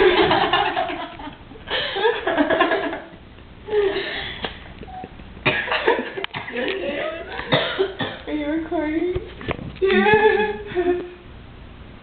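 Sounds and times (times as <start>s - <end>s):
people laughing and giggling: 0.0s - 4.4s, 9.8s - 11.2s.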